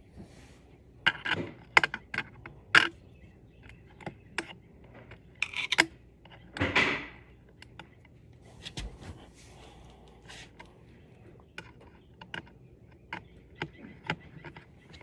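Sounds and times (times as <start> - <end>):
short rustles: 8.5 - 10.7.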